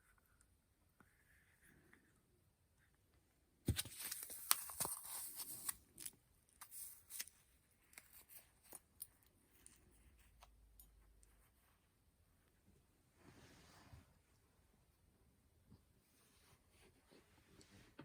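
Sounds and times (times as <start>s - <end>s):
packaging crinkling and rustling: 3.7s - 8.8s.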